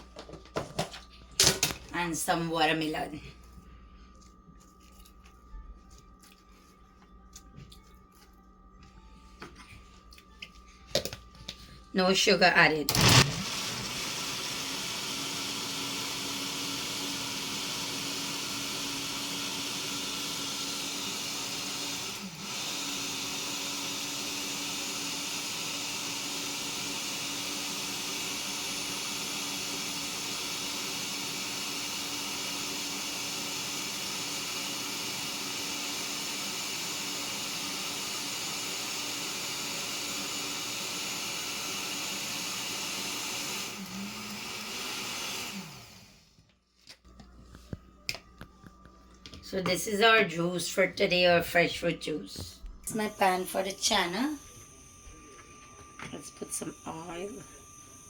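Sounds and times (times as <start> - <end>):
electric blender running: 12.0 - 46.4, 48.1 - 58.0.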